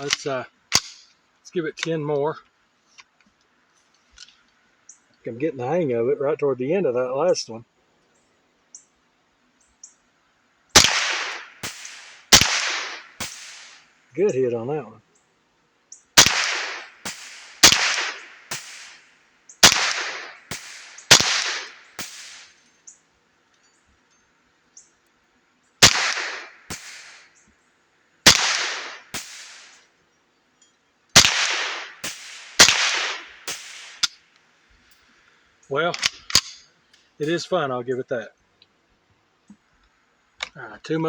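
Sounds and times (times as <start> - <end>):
rifle shots: 0.0 - 1.0, 10.8 - 13.9, 16.2 - 22.6, 25.8 - 27.2, 28.2 - 29.8, 31.2 - 34.1.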